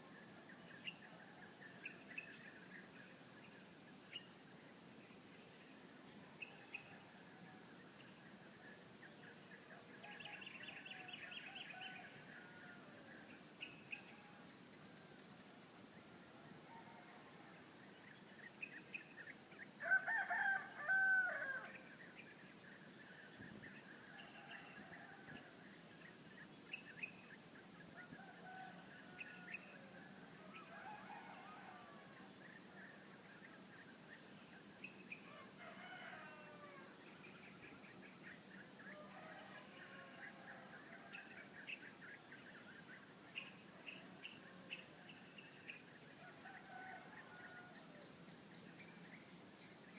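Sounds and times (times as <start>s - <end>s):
rooster crowing: 19.8s - 21.7s, 35.3s - 36.9s.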